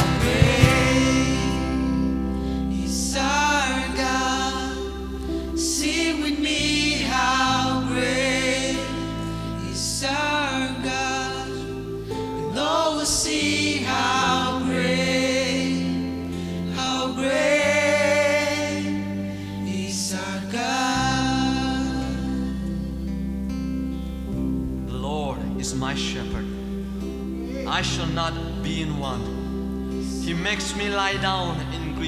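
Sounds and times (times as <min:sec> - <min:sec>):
low sustained accompaniment chords: 0:00.0 - 0:32.0
voices singing worship song: 0:00.0 - 0:32.0.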